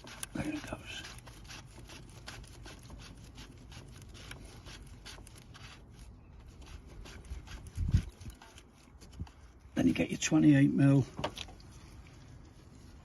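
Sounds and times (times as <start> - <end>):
plastic cap rubbing and scraping: 0.0 - 9.6.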